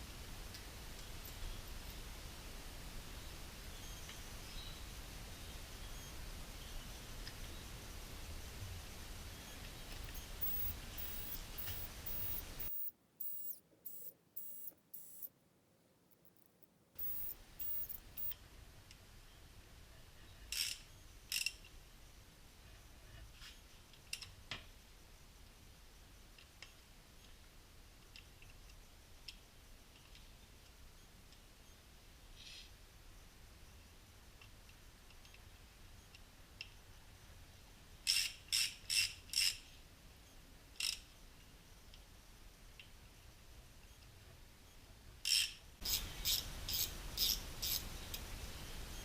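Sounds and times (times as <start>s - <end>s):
low steady hum: 9.9s - 15.3s, 16.2s - 18.3s.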